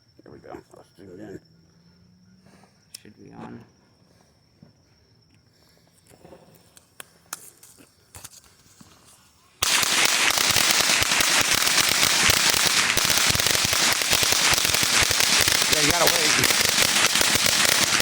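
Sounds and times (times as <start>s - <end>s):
firecrackers cracking: 9.6s - 18.0s.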